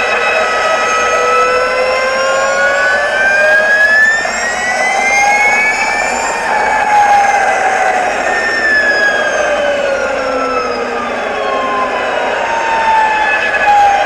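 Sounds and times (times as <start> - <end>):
electric motor whine: 0.0 - 14.0
wind and tyre noise: 0.0 - 14.0.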